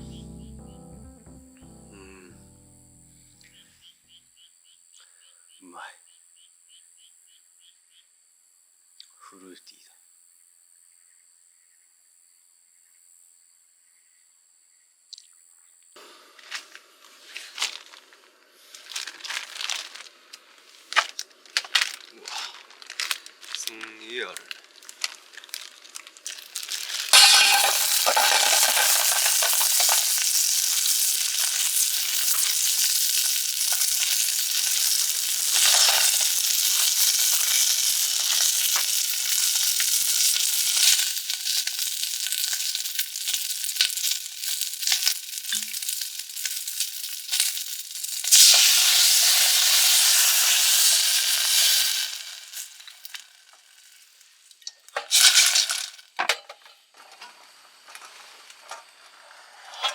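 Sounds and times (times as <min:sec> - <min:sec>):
food sizzling in a pan: 0:16.0 - 0:56.1.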